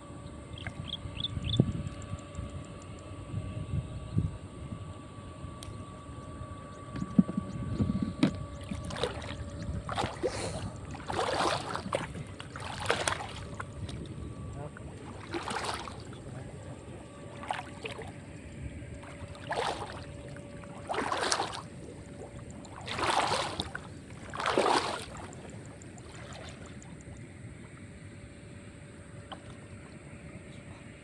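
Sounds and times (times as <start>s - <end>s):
faint steady hum: 0.0s - 31.0s
water sloshing: 6.7s - 30.2s.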